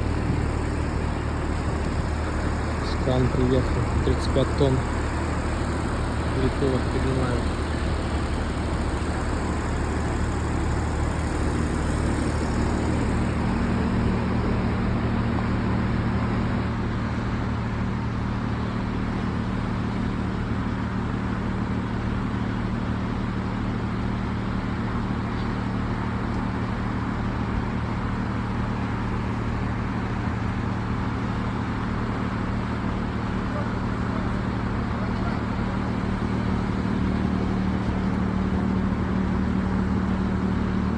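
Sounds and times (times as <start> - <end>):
diesel engine running: 0.0 - 15.3, 32.5 - 38.8.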